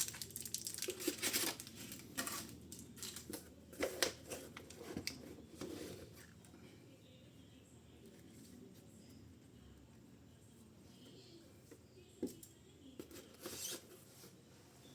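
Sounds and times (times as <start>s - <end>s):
packaging crinkling and tearing: 0.0s - 3.4s.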